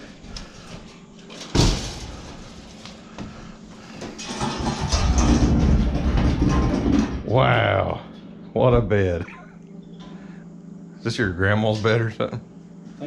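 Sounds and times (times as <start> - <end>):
metal frame dragged scraping: 4.1 - 7.2.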